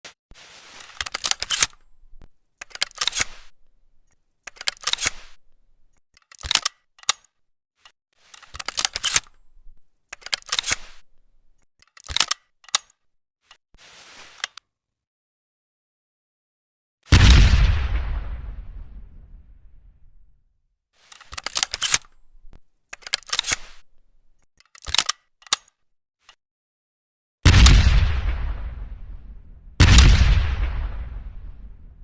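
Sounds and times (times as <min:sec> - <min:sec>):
shotgun mechanism clicking: 0:01.0 - 0:01.9, 0:02.6 - 0:03.6, 0:04.5 - 0:05.5, 0:06.2 - 0:07.3, 0:08.4 - 0:13.0, 0:21.1 - 0:25.8.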